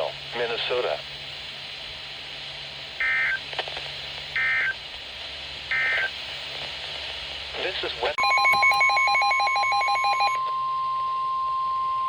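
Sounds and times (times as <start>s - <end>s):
fan hiss: 0.0s - 8.2s
shrill two-tone data warble: 3.0s - 3.4s.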